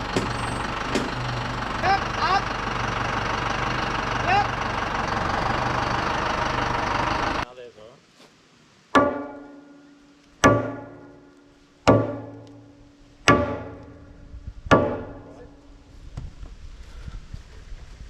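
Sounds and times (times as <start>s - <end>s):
hammer ringing on metal: 0.0s - 1.9s.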